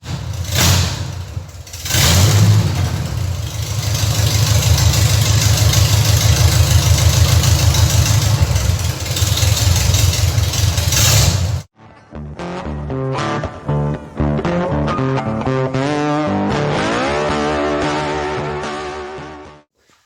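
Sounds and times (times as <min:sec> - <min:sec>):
car engine exhaust note: 0:00.0 - 0:11.7.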